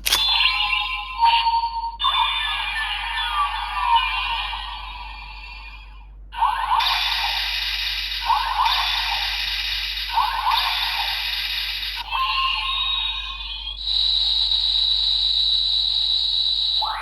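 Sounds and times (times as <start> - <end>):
toy electronic hiss effect: 6.7 - 13.0.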